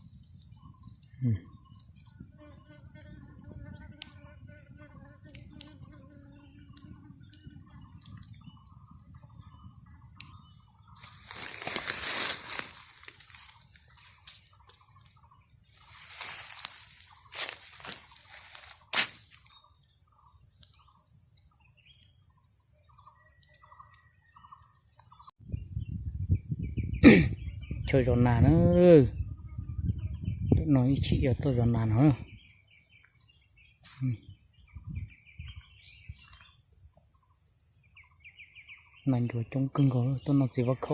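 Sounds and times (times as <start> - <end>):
insects droning: 0.0 - 40.9
rustling: 11.0 - 14.9.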